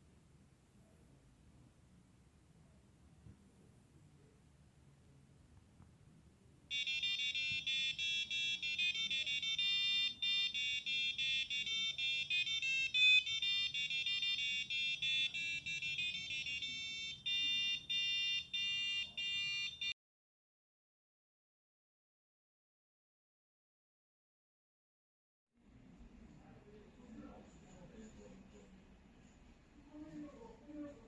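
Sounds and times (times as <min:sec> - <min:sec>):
shrill beeping buzzer melody: 0:06.7 - 0:19.9.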